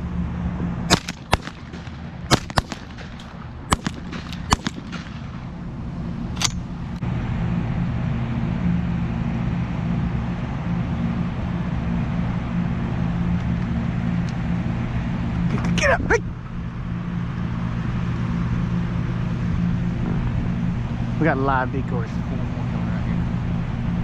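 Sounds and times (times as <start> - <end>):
low rumble: 0.0 - 14.0
shotgun shots: 0.9 - 5.7, 6.4 - 6.8.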